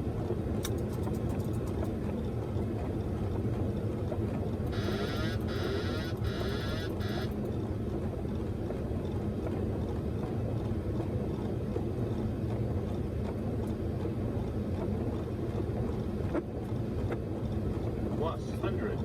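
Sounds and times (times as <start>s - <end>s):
aircraft engine noise: 3.5s - 7.8s.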